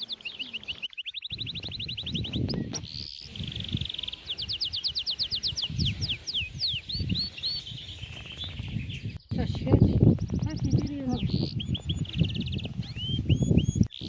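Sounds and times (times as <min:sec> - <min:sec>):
songbird trilling: 0:00.0 - 0:14.0.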